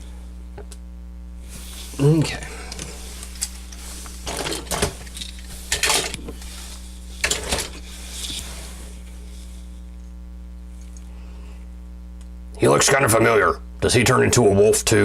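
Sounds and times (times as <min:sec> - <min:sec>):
steady electrical hum: 0:00.0 - 0:15.0
plastic toys clattering: 0:04.3 - 0:06.2.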